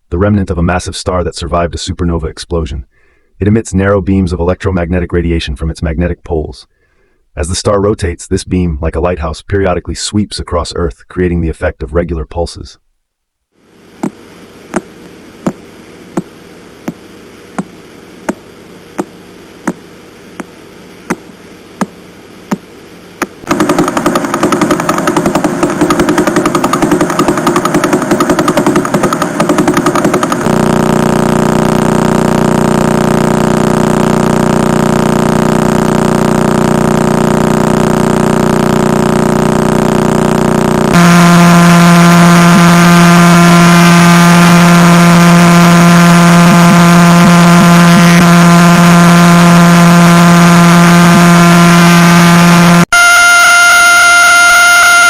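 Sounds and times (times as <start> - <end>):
steady droning hum: 0.0 - 52.9
sharp regular clicks: 23.2 - 30.5
fast buzzing pulse train: 23.3 - 55.0.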